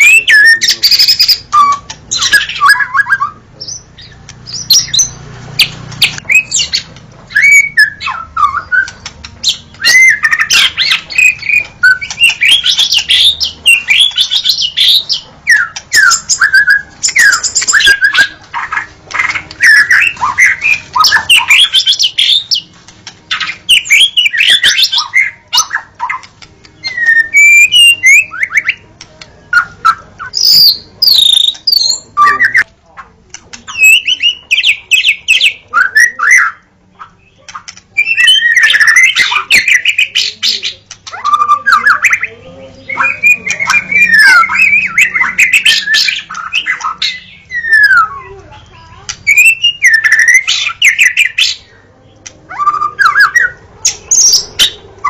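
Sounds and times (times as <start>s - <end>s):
songbird singing varied song: 23.3s - 32.7s, 33.4s - 54.9s.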